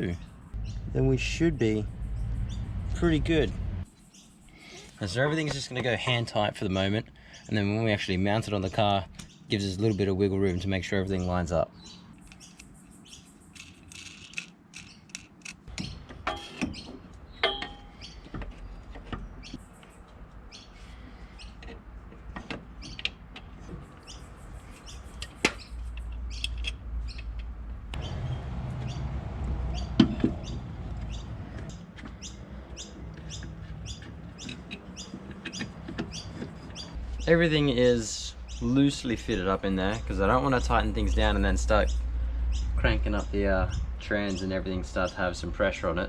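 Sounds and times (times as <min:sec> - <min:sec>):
birds chirping: 0:00.0 - 0:21.7, 0:22.7 - 0:46.0
metallic clicks and knocks of bolts: 0:13.5 - 0:17.9, 0:25.1 - 0:27.6, 0:33.0 - 0:36.8.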